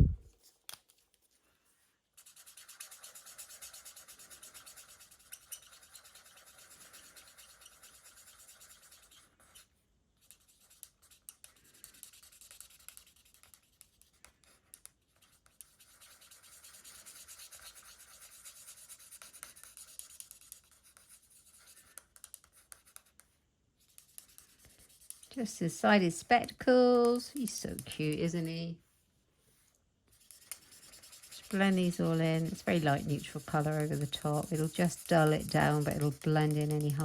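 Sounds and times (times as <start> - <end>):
marker pen scratching on card: 2.2 - 25.3, 30.1 - 37.0.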